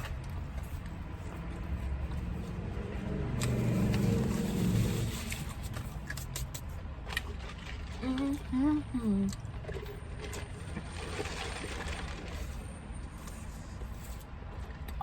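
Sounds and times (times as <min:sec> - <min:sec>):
chewing crunchy crust: 0:00.0 - 0:08.0.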